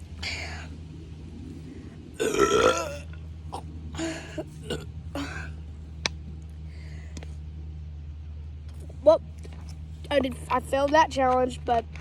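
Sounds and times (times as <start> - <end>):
loud burp: 2.2 - 3.6, 4.6 - 5.5.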